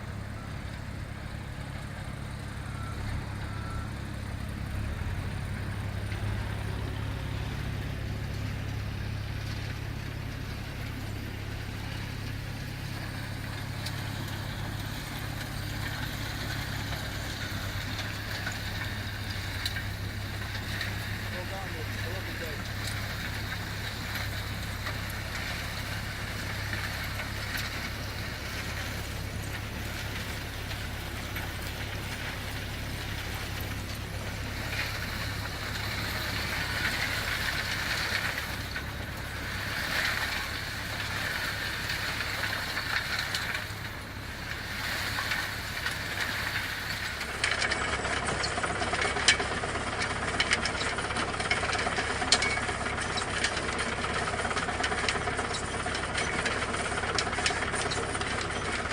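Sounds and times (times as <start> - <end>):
engine running with low hum: 0.0 - 58.9
clicks and rattles: 17.3 - 58.9.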